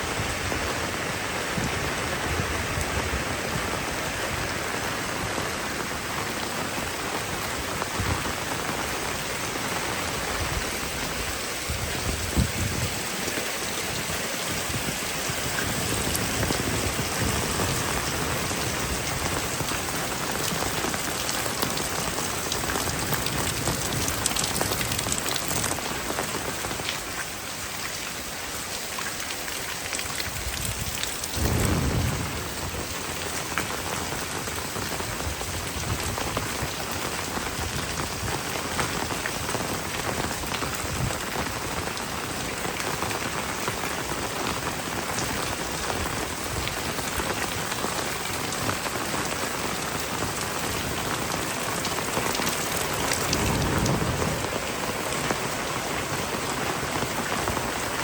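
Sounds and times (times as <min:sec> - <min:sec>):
heavy rain pouring: 0:00.0 - 0:58.0
low rumble: 0:31.3 - 0:33.0.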